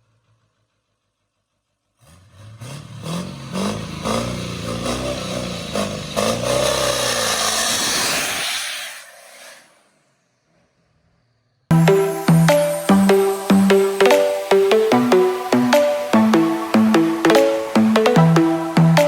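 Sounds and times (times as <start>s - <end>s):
vehicle engine revving: 2.0s - 8.4s.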